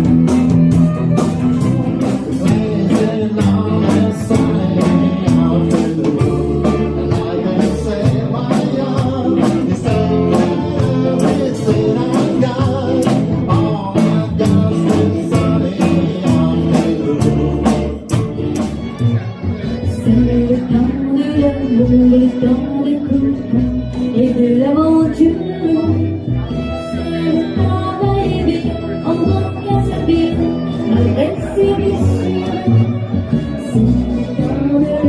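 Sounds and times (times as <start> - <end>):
steady drum beat: 0.0 - 19.4
rock and roll band playing: 0.0 - 35.0
person singing: 1.1 - 18.6, 19.2 - 35.0.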